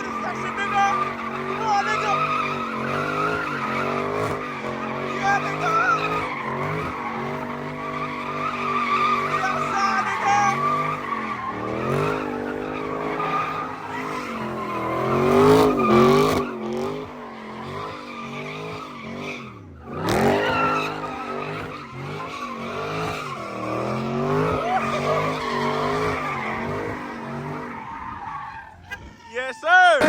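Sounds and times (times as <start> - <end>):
car engine revving hard: 0.0 - 28.4
tires squealing: 0.0 - 30.0.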